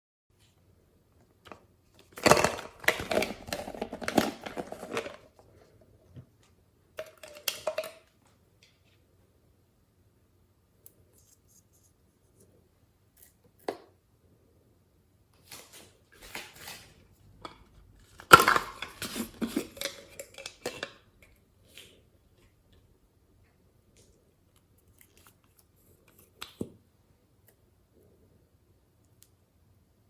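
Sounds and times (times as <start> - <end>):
containers and utensils clinking: 2.1 - 5.3, 7.0 - 8.1, 16.2 - 21.1.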